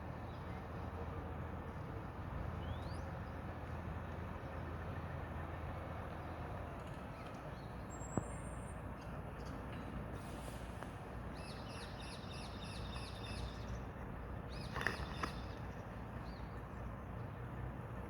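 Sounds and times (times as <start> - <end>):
distant road traffic rumble: 0.0 - 18.0
bird chirp: 11.4 - 13.8, 14.5 - 16.6.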